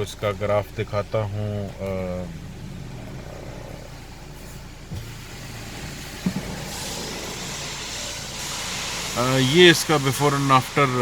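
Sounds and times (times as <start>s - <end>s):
motor vehicle noise: 0.0s - 11.0s
soft low knocks: 1.8s - 7.5s
hiss: 1.9s - 11.0s.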